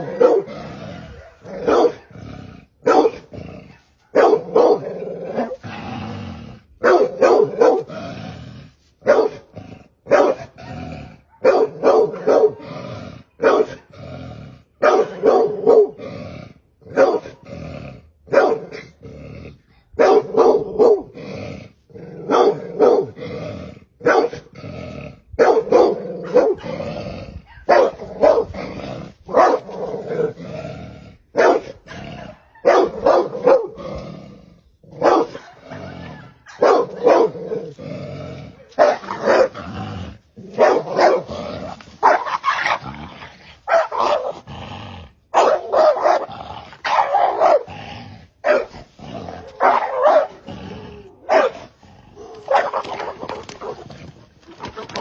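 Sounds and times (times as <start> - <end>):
dog barking: 0.0 - 0.5, 1.1 - 2.1, 2.8 - 5.6, 6.8 - 7.9, 9.0 - 9.5, 10.1 - 10.6, 11.2 - 12.7, 13.4 - 13.9, 14.8 - 16.0, 16.9 - 17.4, 18.3 - 18.8, 20.0 - 21.1, 22.2 - 23.2, 24.0 - 24.5, 25.4 - 26.8, 27.5 - 28.6, 29.3 - 30.4, 31.3 - 33.8, 34.9 - 37.6, 38.6 - 39.6, 40.5 - 41.3, 42.0 - 42.9, 43.7 - 44.4, 45.3 - 47.7, 48.4 - 48.8, 49.4 - 50.5, 51.2 - 53.9.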